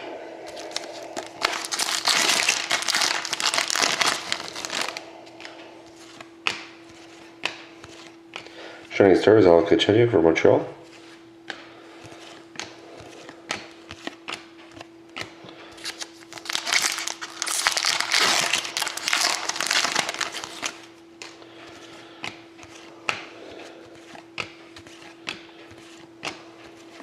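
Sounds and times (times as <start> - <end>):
faint steady hum: 0.0 - 27.0
wrapper tearing and crinkling: 0.6 - 5.0, 15.8 - 20.9
cards clicking and tapping: 1.2 - 8.5, 11.5 - 16.0, 22.2 - 23.3, 23.9 - 27.0.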